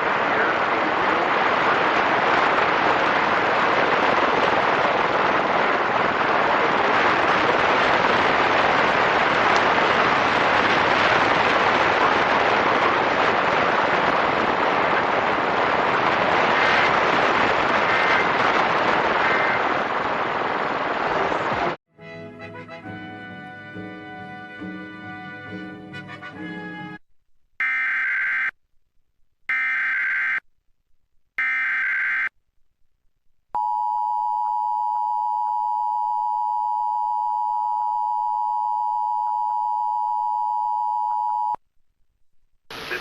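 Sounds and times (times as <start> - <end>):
radio static: 0.0 - 2.6, 16.3 - 21.8, 42.7 - 43.0.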